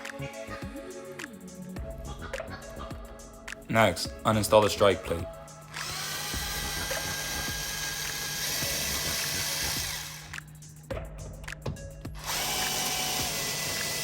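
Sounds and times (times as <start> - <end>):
cordless drill running: 5.7 - 10.3, 12.2 - 14.0.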